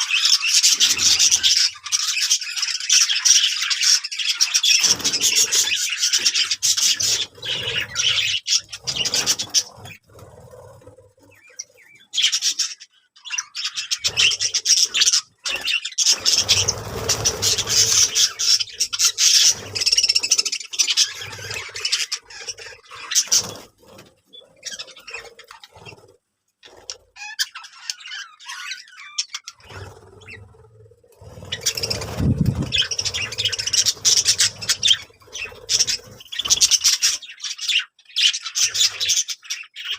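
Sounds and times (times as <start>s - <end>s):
birds chirping and squawking: 0.0s - 39.9s.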